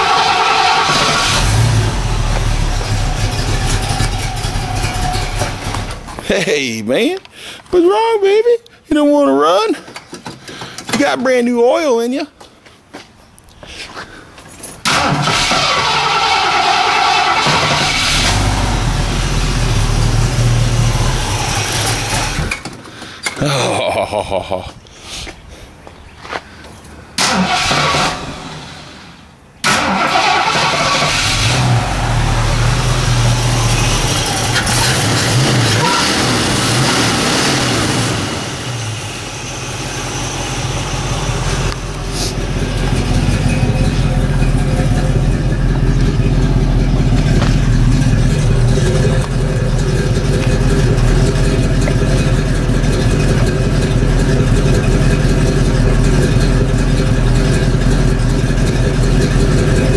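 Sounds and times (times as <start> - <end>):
car engine revving: 0.0 - 6.3, 14.9 - 22.6, 29.6 - 59.9
car engine idling: 0.0 - 6.5, 14.8 - 22.6, 30.2 - 59.9
car engine starting: 0.0 - 6.5, 14.8 - 22.8, 27.1 - 59.9.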